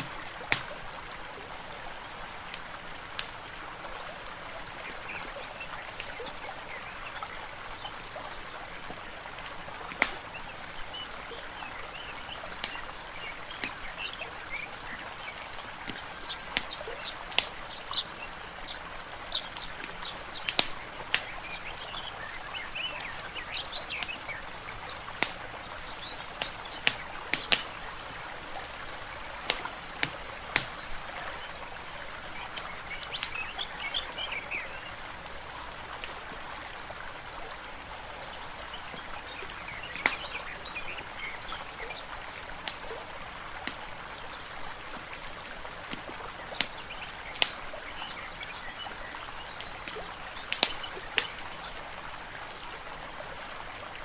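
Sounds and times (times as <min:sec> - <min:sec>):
wood fire crackling: 0:00.0 - 0:00.8, 0:15.1 - 0:17.8, 0:19.4 - 0:34.5
lapping water hiss: 0:00.0 - 0:51.7
songbirds chirping: 0:00.0 - 0:53.8.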